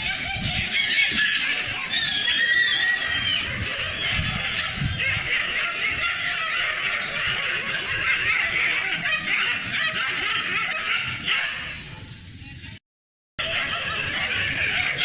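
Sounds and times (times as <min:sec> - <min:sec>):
dogs fighting: 0:00.0 - 0:12.1, 0:13.4 - 0:15.0.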